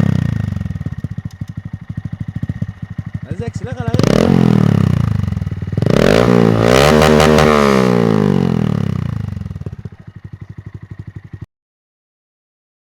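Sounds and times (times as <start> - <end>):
motorcycle engine revving: 0.0 - 11.4.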